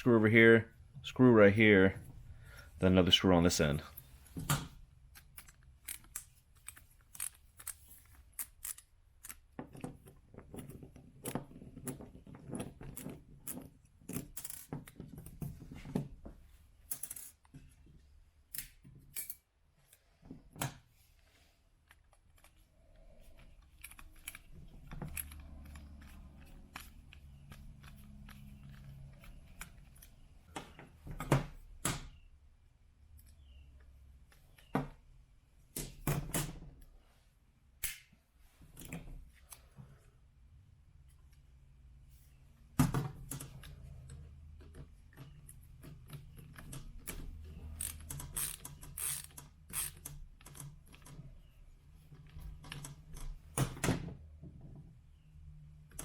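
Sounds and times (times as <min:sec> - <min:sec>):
screws and parts clicking: 0:05.1 - 0:15.4, 0:18.5 - 0:20.0, 0:21.8 - 0:30.2, 0:43.3 - 0:51.2.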